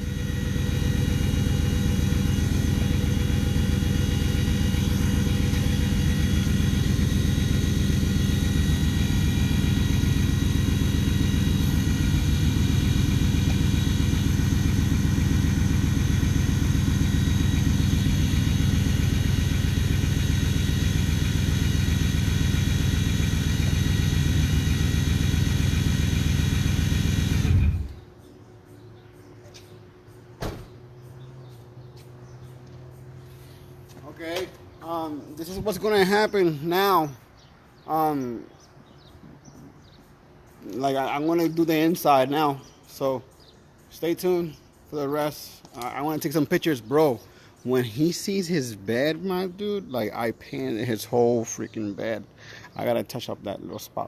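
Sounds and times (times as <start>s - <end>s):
truck engine running loud: 0.0s - 28.0s.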